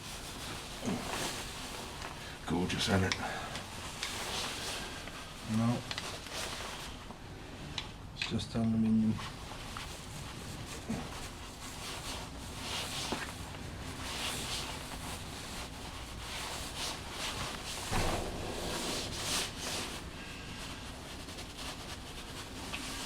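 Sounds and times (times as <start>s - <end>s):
heavy bump: 17.9s - 21.2s.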